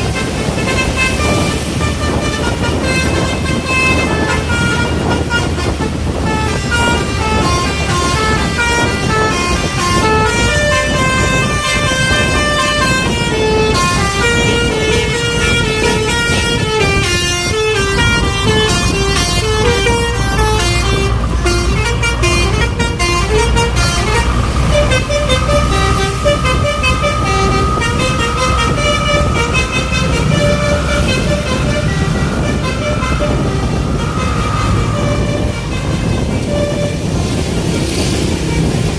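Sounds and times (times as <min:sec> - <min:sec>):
bus engine running: 0:00.0 - 0:38.9
multi-tone bus horn melody: 0:00.0 - 0:38.9.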